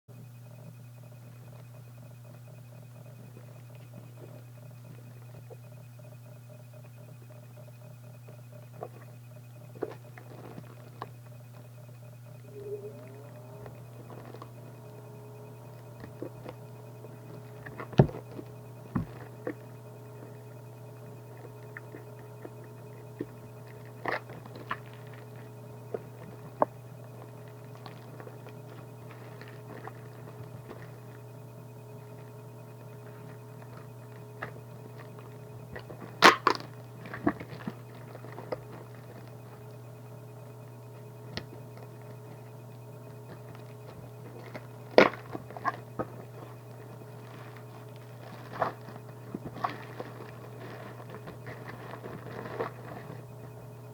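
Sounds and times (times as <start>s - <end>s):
steady electrical hum: 0.1s - 53.9s
shoebox and shoes being handled: 43.2s - 53.9s.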